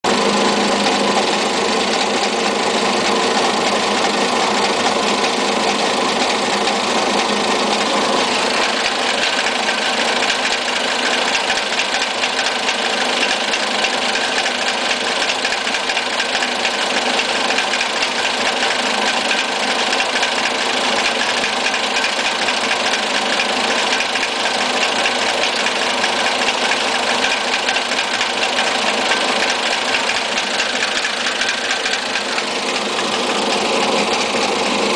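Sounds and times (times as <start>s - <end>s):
car engine idling roughly: 0.1s - 34.9s.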